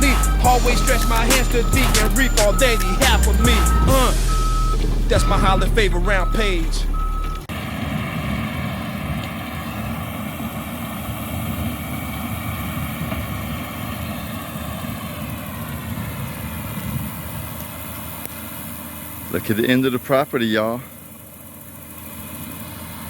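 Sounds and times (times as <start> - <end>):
engine drone: 0.0 - 23.0
rotary mower whirring: 0.0 - 23.0.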